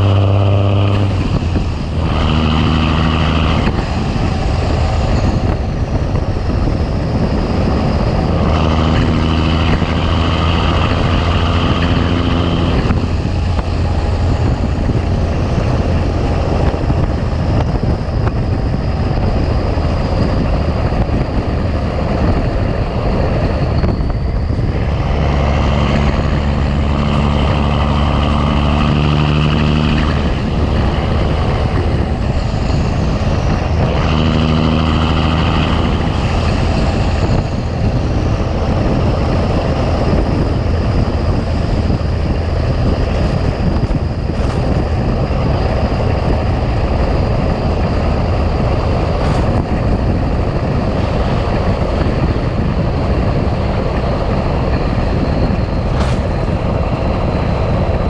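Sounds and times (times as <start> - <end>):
diesel truck engine drone: 0.0 - 58.0.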